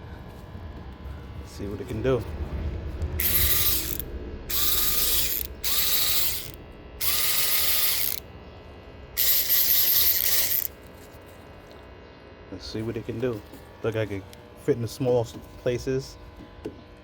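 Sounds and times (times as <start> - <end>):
electric ratchet whirring: 3.2 - 8.3, 9.1 - 11.2.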